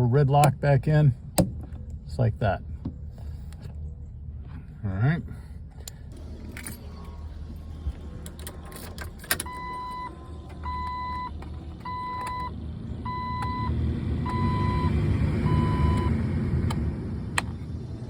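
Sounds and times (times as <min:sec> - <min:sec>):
car warning chime beeping: 0:09.1 - 0:16.2.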